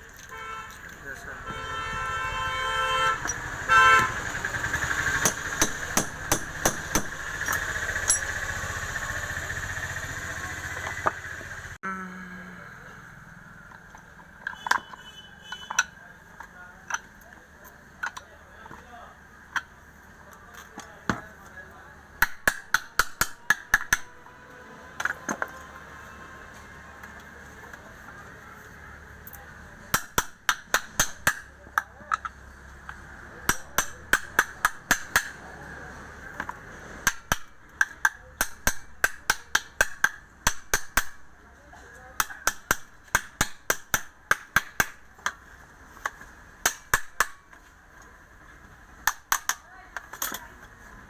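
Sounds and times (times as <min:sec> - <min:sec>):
vehicle horn toot: 0:00.2 - 0:04.3, 0:14.5 - 0:16.0.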